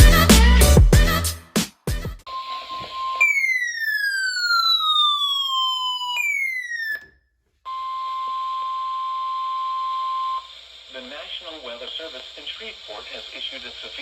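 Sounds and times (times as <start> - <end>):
electronic tones gliding downward: 2.3 - 7.2
steady high alarm tone: 2.3 - 10.6.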